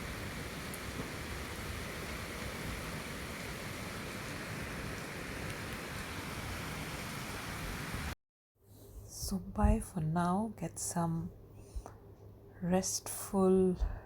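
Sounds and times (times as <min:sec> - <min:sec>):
breeze rushing through leaves: 0:00.0 - 0:08.2.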